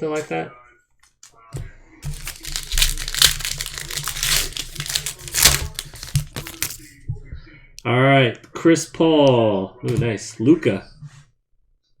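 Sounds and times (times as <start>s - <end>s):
wrapper torn and crinkled: 2.0s - 6.9s.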